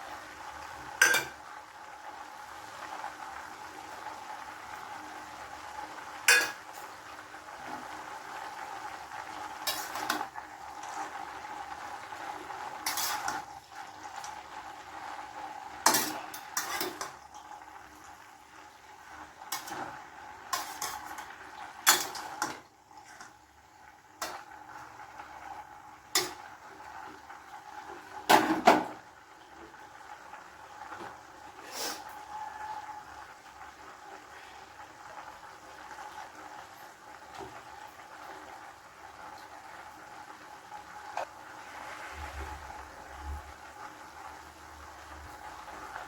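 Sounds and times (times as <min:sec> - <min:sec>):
metal utensil scraping a pan: 0:01.0 - 0:01.4, 0:06.3 - 0:06.9, 0:09.6 - 0:11.1, 0:12.7 - 0:13.5, 0:15.8 - 0:17.2, 0:19.5 - 0:23.4, 0:26.1 - 0:26.4, 0:31.6 - 0:32.9.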